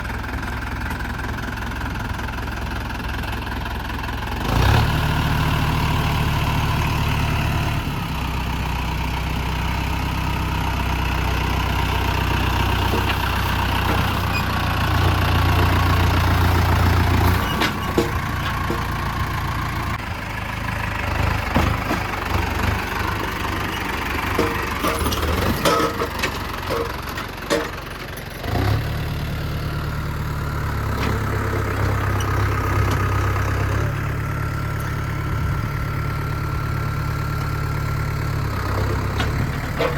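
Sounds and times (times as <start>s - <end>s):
diesel tractor engine droning: 0.0s - 39.9s
knocks and clanks: 17.2s - 19.2s, 21.3s - 22.6s, 24.3s - 28.2s.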